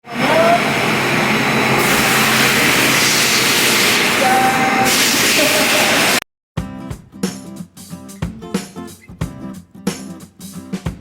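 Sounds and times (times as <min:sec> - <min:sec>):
machine noise with hiss: 0:00.1 - 0:06.2.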